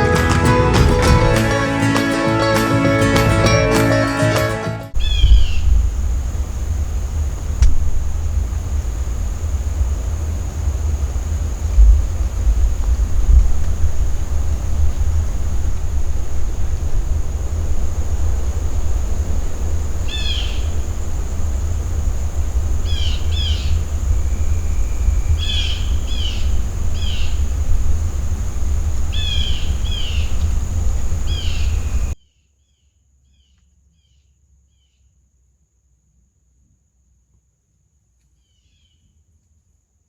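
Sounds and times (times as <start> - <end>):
steady high hiss: 4.9 - 32.2
wind rumbling on microphone: 4.9 - 32.2
bird chirping: 5.0 - 9.4, 12.1 - 33.6.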